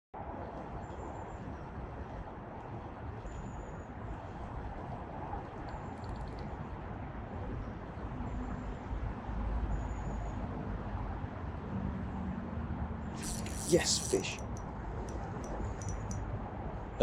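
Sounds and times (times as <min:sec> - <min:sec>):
distant traffic hum: 0:12.2 - 0:17.0
small birds chirping: 0:13.2 - 0:14.6.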